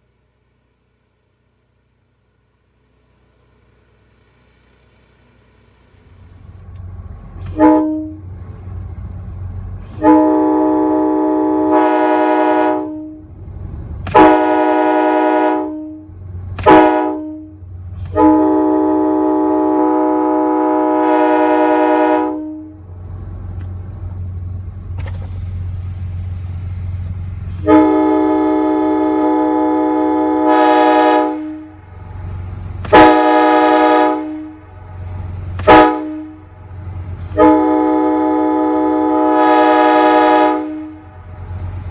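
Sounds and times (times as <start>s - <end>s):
train horn chords: 7.4s - 8.4s, 9.8s - 13.3s, 14.0s - 22.9s, 27.5s - 41.4s.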